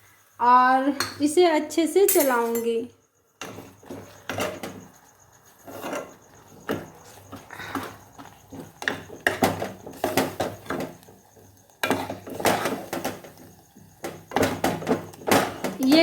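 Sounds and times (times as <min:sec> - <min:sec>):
spoon scraping cooking pot: 0:03.4 - 0:15.9.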